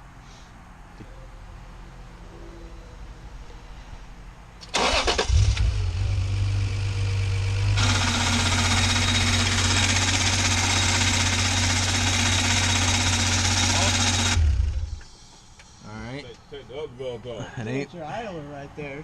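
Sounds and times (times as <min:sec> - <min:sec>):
engine starter cranking: 0:04.6 - 0:05.8
car engine idling: 0:04.7 - 0:15.8.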